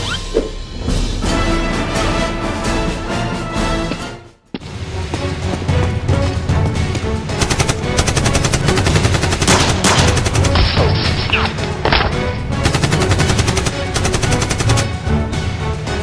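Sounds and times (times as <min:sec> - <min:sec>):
action background music: 0:00.0 - 0:16.0
rapid gunfire: 0:07.4 - 0:11.7, 0:12.5 - 0:15.1.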